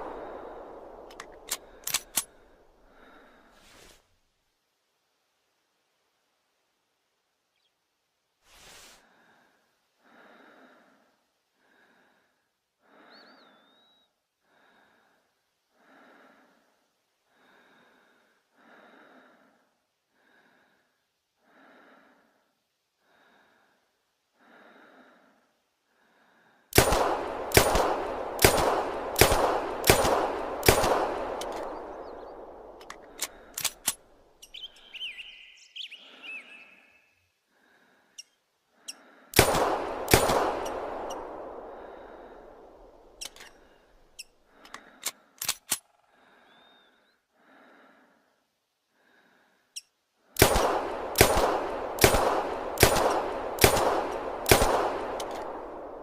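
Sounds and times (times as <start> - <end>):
small clicks: 1.0 - 2.4, 32.7 - 34.6, 43.2 - 46.0
faint soft puffs: 3.2 - 4.3, 8.4 - 9.4
pistol shots ringing: 26.8 - 33.9, 39.4 - 42.4, 50.4 - 56.0.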